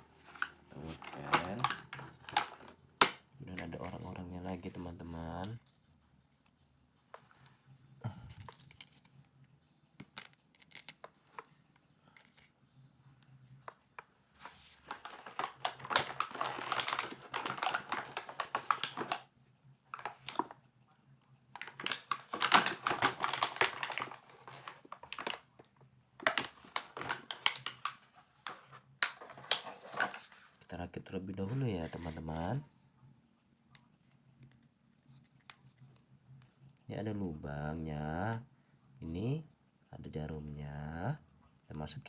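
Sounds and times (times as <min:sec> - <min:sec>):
plastic crinkling and rustling: 0:00.1 - 0:05.6, 0:14.4 - 0:19.3, 0:21.6 - 0:32.3.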